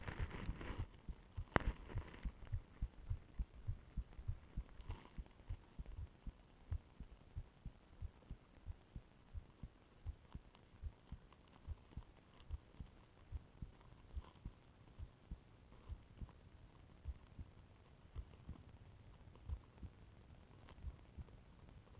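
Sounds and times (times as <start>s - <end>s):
heartbeat thumps: 0.0s - 16.4s, 17.0s - 17.5s.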